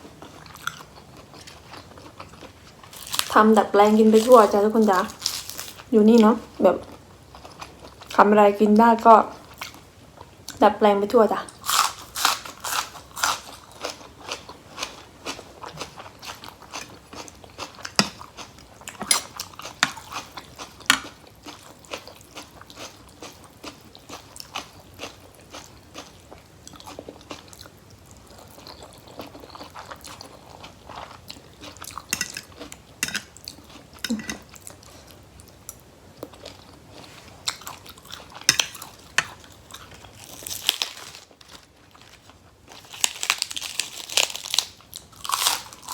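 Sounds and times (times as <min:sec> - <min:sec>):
person chewing crunchy food: 0:00.0 - 0:03.4, 0:04.0 - 0:05.9, 0:06.8 - 0:08.2, 0:11.6 - 0:45.9.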